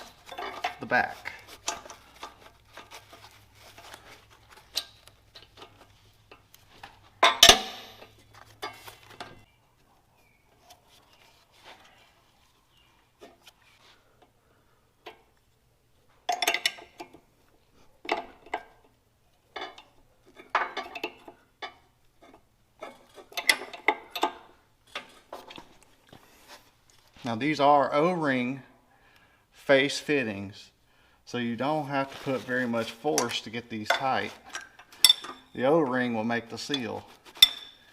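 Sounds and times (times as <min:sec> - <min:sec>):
wrenches clinking on metal fittings: 0:00.0 - 0:06.5, 0:07.2 - 0:09.4, 0:16.2 - 0:17.2, 0:19.6 - 0:25.3, 0:32.7 - 0:37.9.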